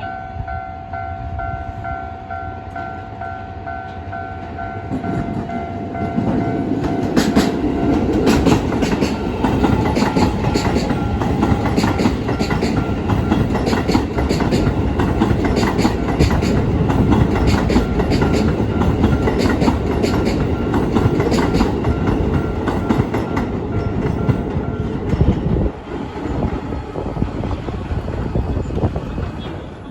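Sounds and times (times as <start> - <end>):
faint crossing warning bell: 0.0 - 14.5
train rumble: 0.0 - 29.9
train wheels clacking over rail joints: 4.9 - 29.8.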